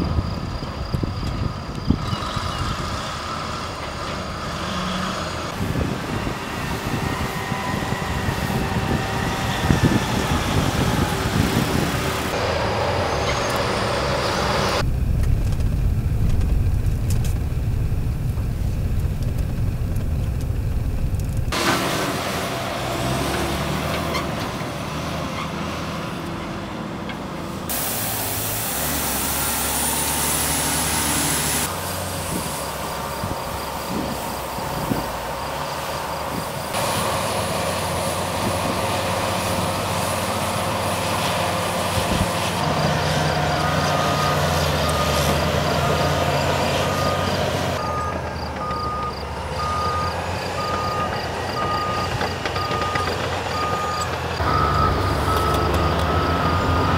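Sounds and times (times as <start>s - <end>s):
construction equipment engines: 0.0s - 56.9s
backup alarm beeping: 47.0s - 56.9s.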